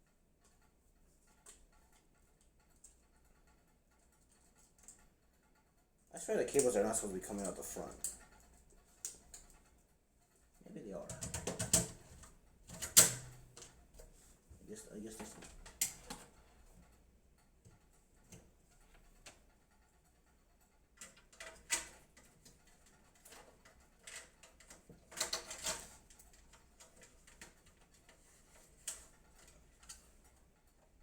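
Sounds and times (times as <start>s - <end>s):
clicks and knocks inside computer case: 11.1s - 13.8s.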